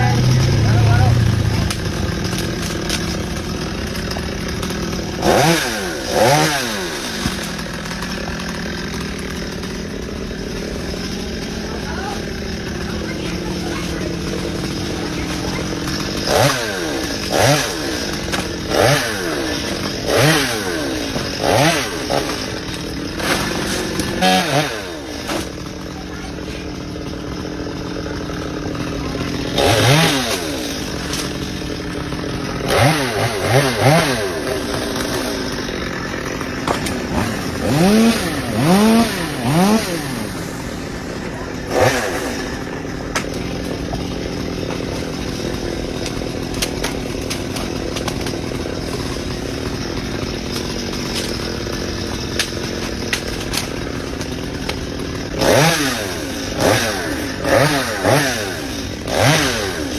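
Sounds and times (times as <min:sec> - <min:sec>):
chainsaw engine idling: 0:00.0 - 0:59.9
chainsaw throttle blips: 0:00.0 - 0:59.9.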